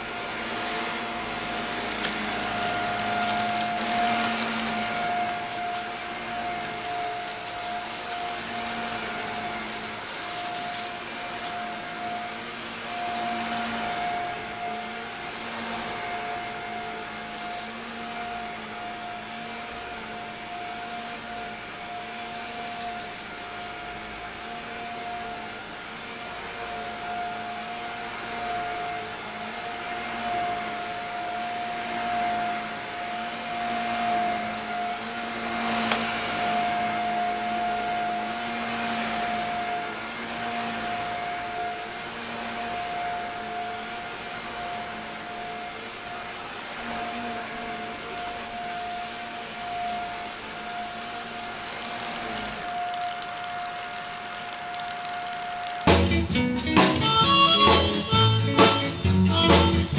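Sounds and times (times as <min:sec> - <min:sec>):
vacuum cleaner running: 0:00.0 - 0:59.9
brief crackles: 0:47.0 - 0:56.0.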